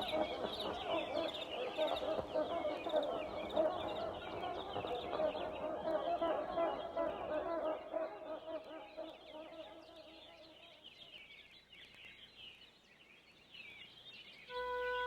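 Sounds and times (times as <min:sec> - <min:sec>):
low bird calls: 0:00.0 - 0:10.8.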